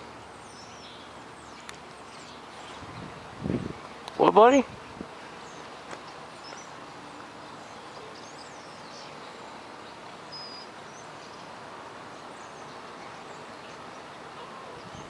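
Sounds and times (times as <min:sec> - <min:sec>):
outdoor background hiss: 0:00.0 - 0:15.0
faint high bird chirps: 0:07.4 - 0:11.5.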